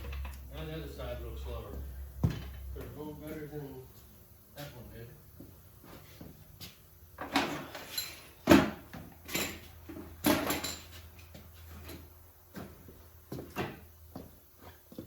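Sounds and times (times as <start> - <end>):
objects knocking on hard surface: 2.2 - 2.6.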